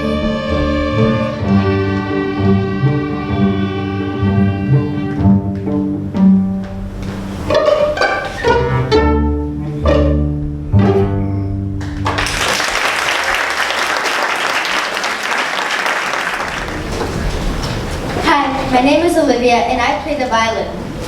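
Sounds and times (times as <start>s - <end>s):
string orchestra playing: 0.0s - 6.2s, 7.2s - 11.5s
audience applause: 11.8s - 17.9s.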